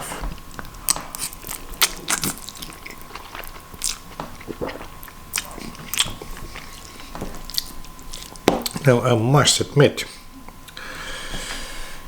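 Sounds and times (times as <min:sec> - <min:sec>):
person chewing noodles: 0:00.0 - 0:08.9.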